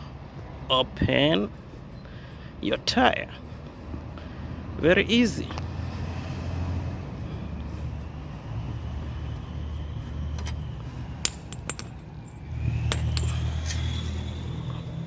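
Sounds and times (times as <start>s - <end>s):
wheel nut and wrench clinking: 10.3s - 15.0s.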